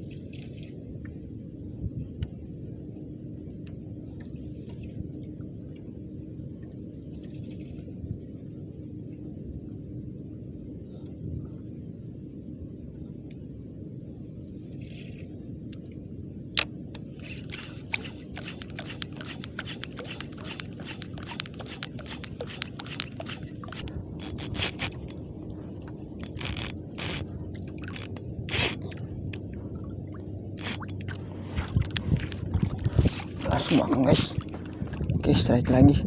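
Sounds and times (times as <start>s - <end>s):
boat low rumble: 0.0s - 36.0s
fishing reel scraping clicks: 24.2s - 25.1s, 26.2s - 27.3s, 27.9s - 28.8s, 30.6s - 31.0s.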